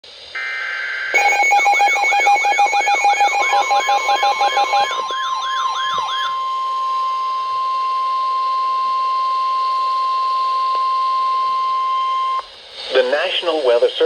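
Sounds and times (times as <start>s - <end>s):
steady single-pitch alarm tone: 0.4s - 12.5s
fast electronic beeping: 1.2s - 6.3s
wailing siren sweep: 1.2s - 6.8s.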